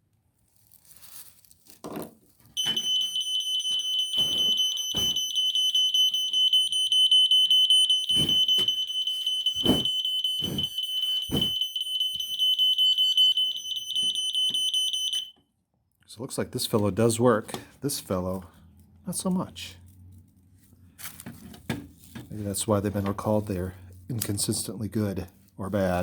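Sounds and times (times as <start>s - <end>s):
smoke alarm pulsing beep: 2.6s - 15.4s.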